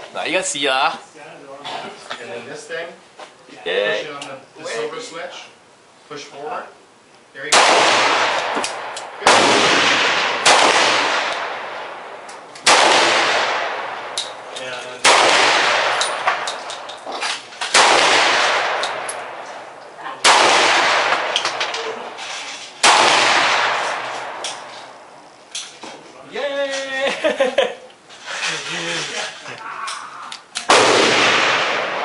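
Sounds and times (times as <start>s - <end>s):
pistol shots echoing: 7.5s - 17.0s, 17.7s - 19.6s, 20.2s - 22.0s, 22.8s - 24.7s, 30.7s - 32.0s.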